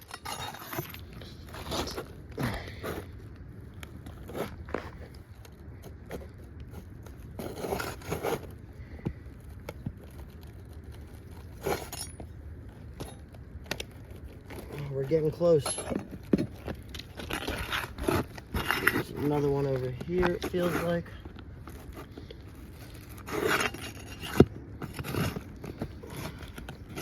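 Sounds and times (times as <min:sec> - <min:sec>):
scraping under roof shingles: 0:04.0 - 0:12.0, 0:13.9 - 0:27.0.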